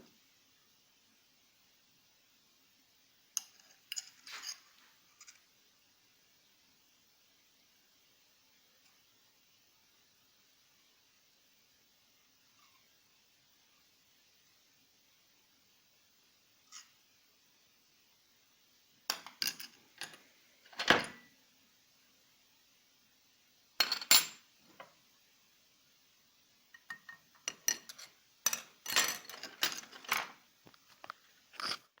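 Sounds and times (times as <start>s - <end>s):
metal objects clinking and knocking: 19.1s - 21.3s, 23.8s - 24.9s, 26.8s - 31.9s.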